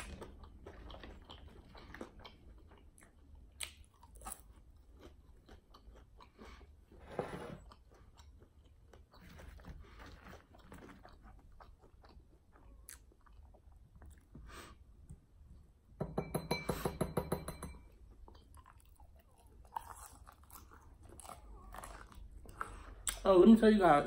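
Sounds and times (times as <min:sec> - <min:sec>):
person chewing crunchy food: 0:00.0 - 0:06.9, 0:07.6 - 0:15.1, 0:17.9 - 0:23.2.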